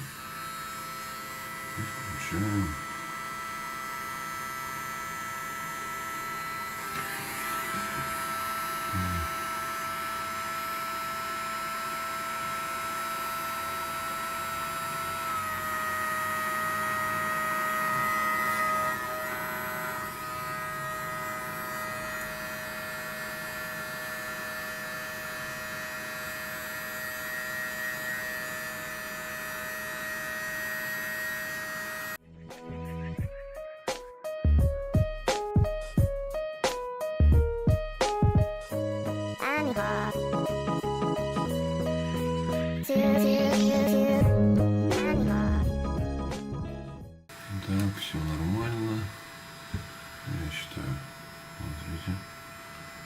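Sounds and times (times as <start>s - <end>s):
heat gun fan whine: 0.0s - 32.2s, 47.3s - 53.0s.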